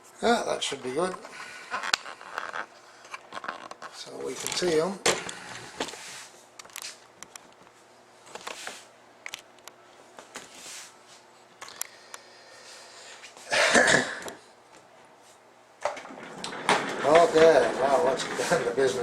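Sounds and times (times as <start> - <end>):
man clearing throat: 13.5 - 14.4.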